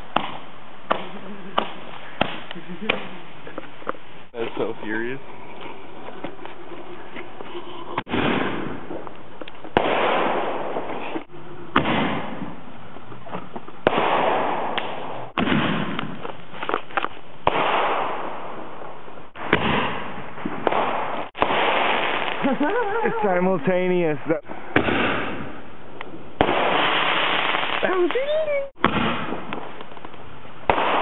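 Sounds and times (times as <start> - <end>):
fireworks bangs: 0.0 - 3.6, 8.0 - 12.8, 13.8 - 23.3, 24.7 - 25.7, 26.4 - 31.0
fireworks hissing and crackling: 0.0 - 18.3, 19.3 - 31.0.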